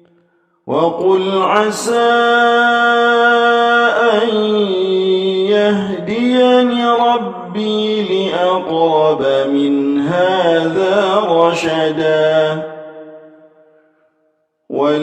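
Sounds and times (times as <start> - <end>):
breath: 0.0 - 0.6, 13.6 - 14.2
man chanting melodically: 0.7 - 13.4, 14.7 - 15.0.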